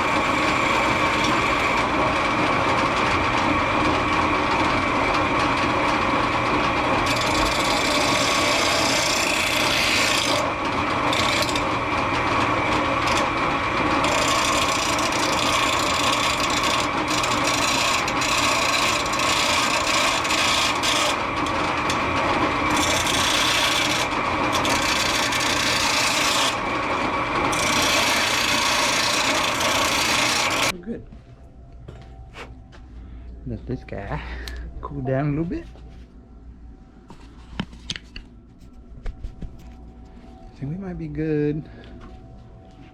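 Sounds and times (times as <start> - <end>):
power tool grinding metal: 0.0 - 30.7.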